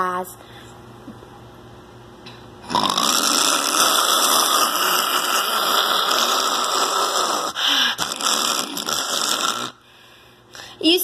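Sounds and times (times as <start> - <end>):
loud snoring: 2.6 - 9.8.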